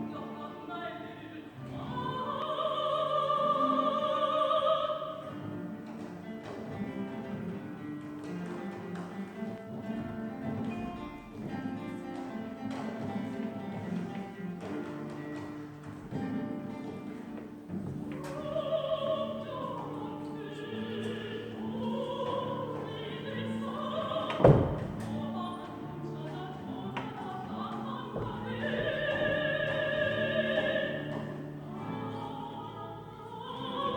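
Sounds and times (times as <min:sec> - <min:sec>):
soprano singing with vibrato: 0:00.0 - 0:07.0, 0:17.8 - 0:33.9
guitar orchestra playing: 0:00.0 - 0:33.9.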